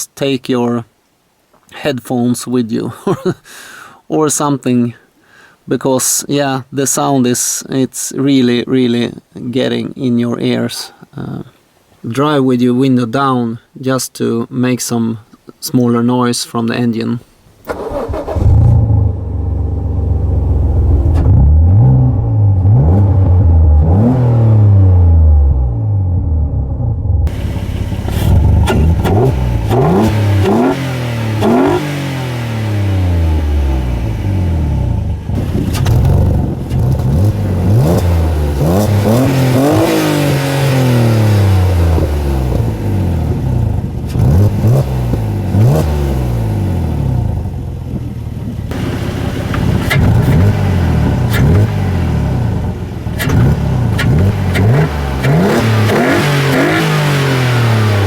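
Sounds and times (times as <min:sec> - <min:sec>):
car engine revving: 0:17.7 - 0:47.6, 0:48.7 - 0:58.0.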